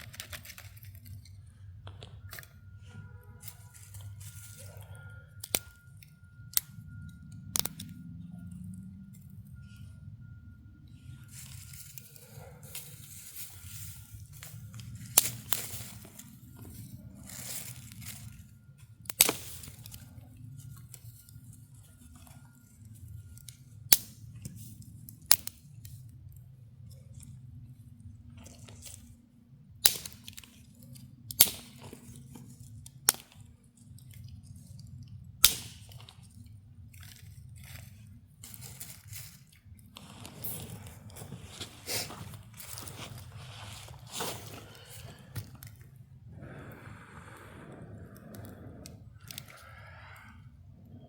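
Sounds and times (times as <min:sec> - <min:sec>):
dry sticks snapping: 0:00.0 - 0:02.5, 0:03.4 - 0:06.8, 0:07.5 - 0:08.0, 0:11.3 - 0:26.4, 0:29.8 - 0:45.9, 0:48.3 - 0:50.3
low steady rumble: 0:00.0 - 0:51.0.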